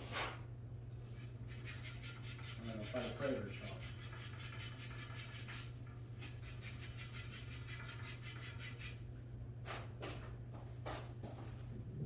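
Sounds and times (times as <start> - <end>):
chalk scraping on cue tip: 1.0 - 9.0
low electrical hum: 8.8 - 12.0.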